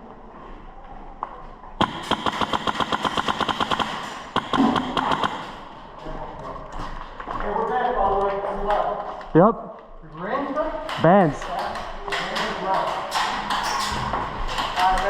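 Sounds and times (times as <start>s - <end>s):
airsoft gun firing full-auto: 1.8s - 5.6s.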